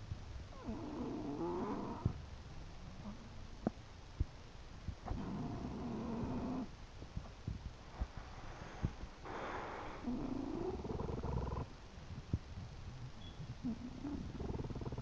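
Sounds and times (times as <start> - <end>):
dog snoring: 0.5 - 2.2, 5.1 - 6.7, 9.2 - 11.7, 13.6 - 15.0
dog breathy exhale: 8.3 - 10.8.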